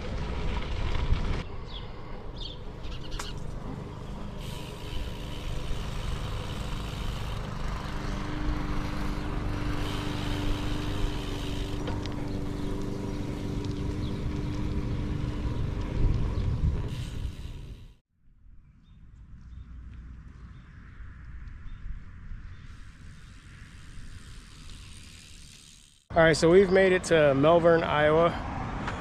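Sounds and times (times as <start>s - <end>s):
wind buffeting microphone: 12.4s - 17.6s.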